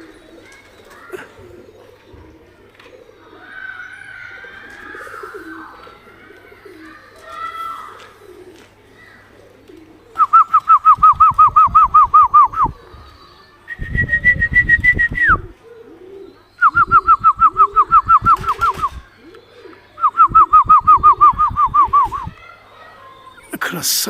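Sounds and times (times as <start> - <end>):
pigeons cooing: 0.0 - 24.0
person whistling trills: 13.7 - 15.4, 20.0 - 22.3.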